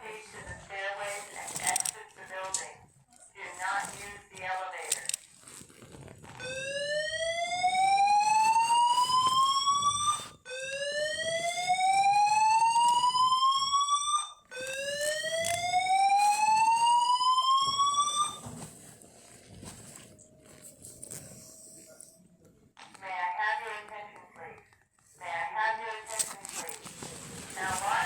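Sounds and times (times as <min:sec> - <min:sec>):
fire alarm whooping tone: 0:06.4 - 0:18.5.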